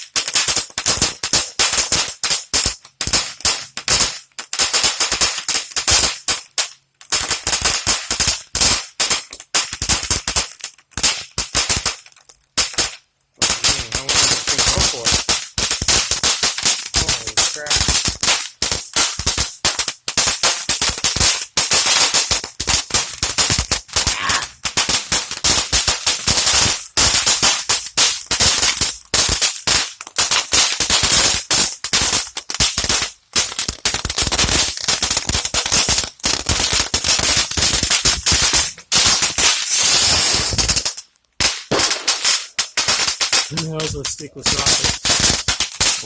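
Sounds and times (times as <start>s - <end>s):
firework rapid cracks and pops: 0.0s - 46.0s
rocket hissing: 39.4s - 40.8s.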